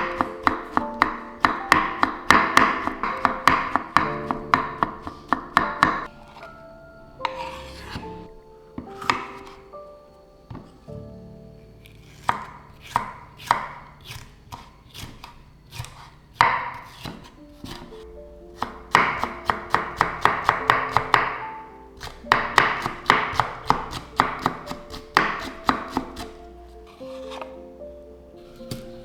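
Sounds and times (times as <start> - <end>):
knife chopping on cutting board: 0.0 - 6.6, 8.8 - 9.6, 12.0 - 18.0, 18.6 - 21.4, 22.0 - 26.4, 27.1 - 27.5, 28.5 - 29.0
soft background music: 0.0 - 29.0.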